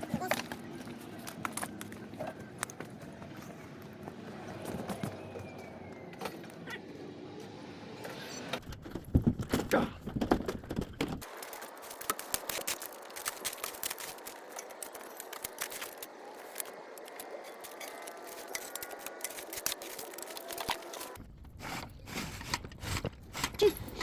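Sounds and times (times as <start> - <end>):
dry brush snapping and rattling: 9.1 - 21.2.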